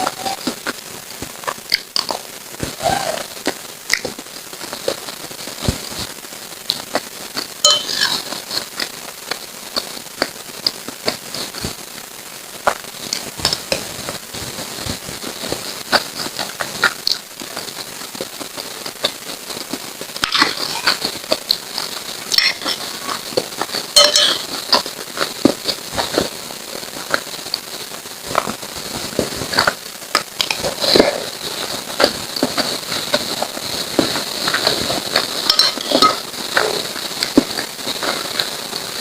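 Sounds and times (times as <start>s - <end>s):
wet chewing sounds: 15.5s - 18.3s.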